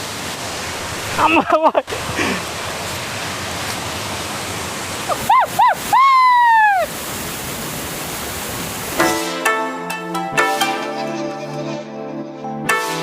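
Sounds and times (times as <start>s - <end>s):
waterfall roaring: 0.0s - 10.9s.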